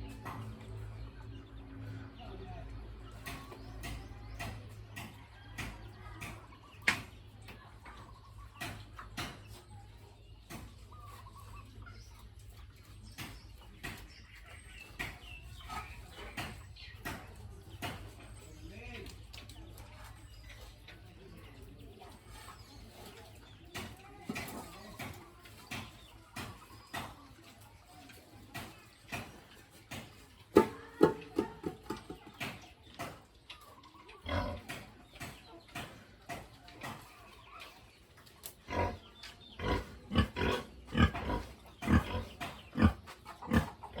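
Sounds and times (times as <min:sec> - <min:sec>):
pig grunting: 0:34.2 - 0:34.7, 0:38.6 - 0:44.0.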